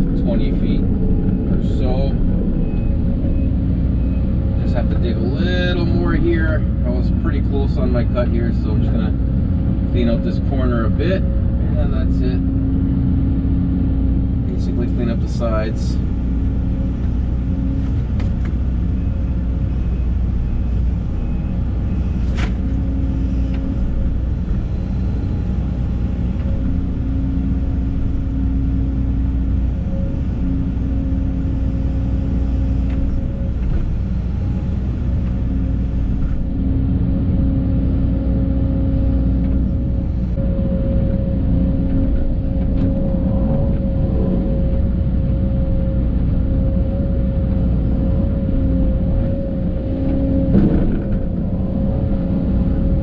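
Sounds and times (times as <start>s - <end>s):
excavator diesel engine: 0.0s - 53.0s
hydraulic tone: 38.5s - 53.0s.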